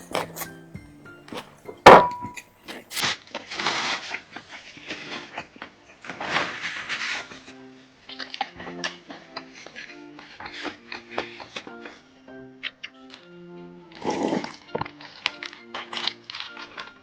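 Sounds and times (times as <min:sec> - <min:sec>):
faint background music: 0:00.0 - 0:17.0
tableware knock: 0:01.3 - 0:02.4.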